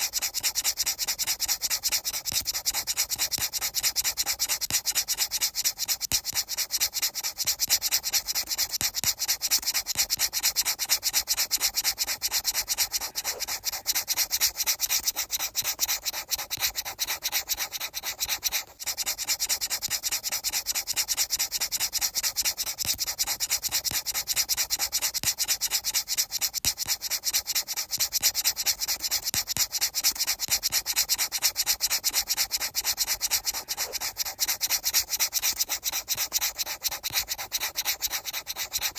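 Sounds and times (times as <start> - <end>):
fast hissy scraping strokes: 5.1 - 18.8, 30.6 - 38.9.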